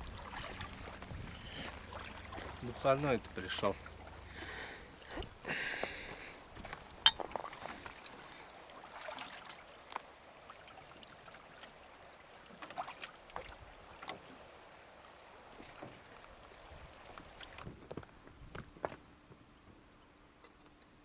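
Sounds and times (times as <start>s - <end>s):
light knocks and clicks in boat: 0.0s - 8.3s, 12.4s - 14.5s, 15.5s - 21.0s
faint hiss of water and air: 0.0s - 17.7s.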